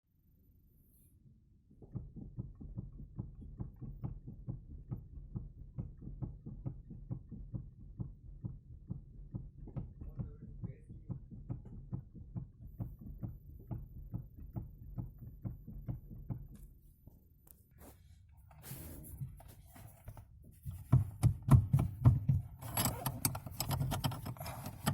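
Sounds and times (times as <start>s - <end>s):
low steady rumble: 0.2s - 24.9s
knocking in car steering: 1.8s - 16.6s, 20.7s - 24.9s.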